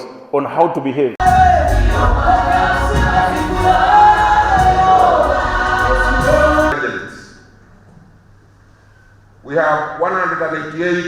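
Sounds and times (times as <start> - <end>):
deep bass accompaniment: 1.2 - 6.8
gospel choir singing: 1.2 - 6.9.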